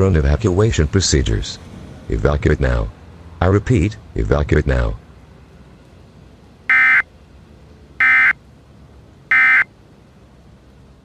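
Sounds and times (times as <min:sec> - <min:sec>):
buzzing digital data bursts: 0:09.3 - 0:09.7.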